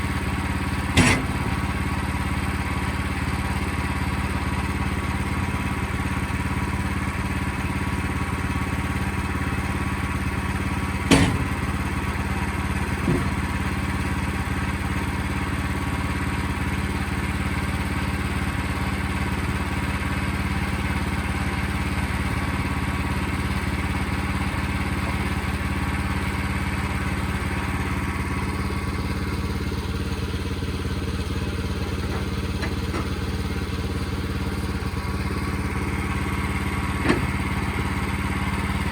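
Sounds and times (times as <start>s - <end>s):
sawmill engine running: 0.0s - 38.9s
sharp knock: 11.1s - 11.7s.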